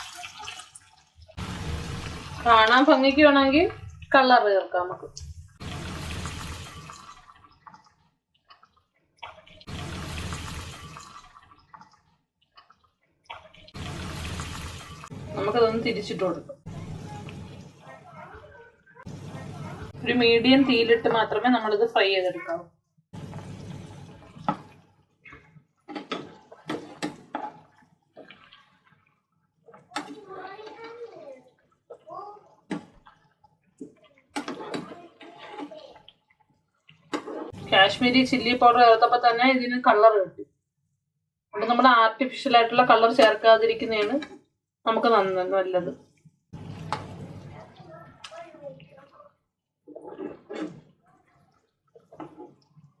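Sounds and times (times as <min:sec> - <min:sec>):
chicken sizzling in oil: 0:00.0 - 0:02.9, 0:05.6 - 0:07.2, 0:09.6 - 0:11.3, 0:13.6 - 0:15.5
sharp crackles and knocks: 0:23.2 - 0:27.6.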